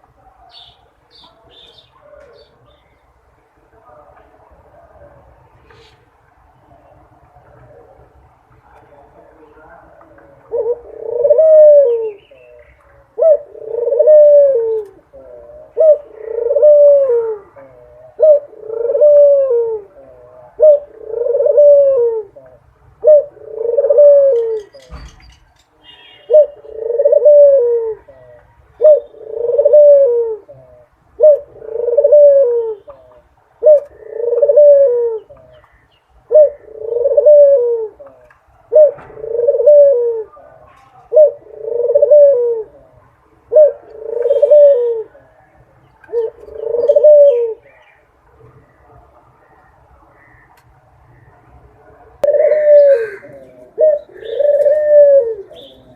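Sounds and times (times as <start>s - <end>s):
dove cooing: 7.4s - 25.0s, 26.2s - 47.8s, 51.1s - 55.9s.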